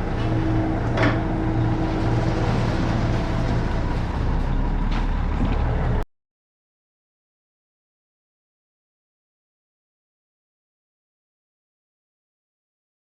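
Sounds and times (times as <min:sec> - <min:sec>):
diesel engine running: 0:00.0 - 0:06.0.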